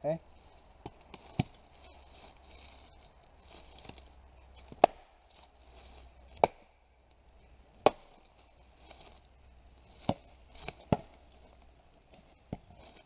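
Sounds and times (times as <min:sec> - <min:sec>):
axe chopping firewood: 0:00.8 - 0:01.6, 0:04.6 - 0:05.4, 0:06.3 - 0:06.7, 0:07.8 - 0:09.2, 0:09.9 - 0:11.4, 0:12.5 - 0:13.0.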